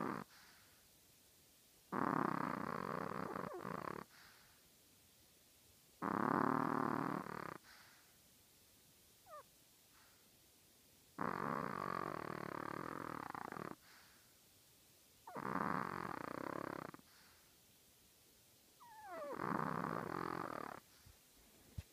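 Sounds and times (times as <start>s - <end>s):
small dog snoring: 0.0s - 0.7s, 1.9s - 4.6s, 6.0s - 8.1s, 9.2s - 10.2s, 11.1s - 14.2s, 15.2s - 17.5s, 18.8s - 21.2s.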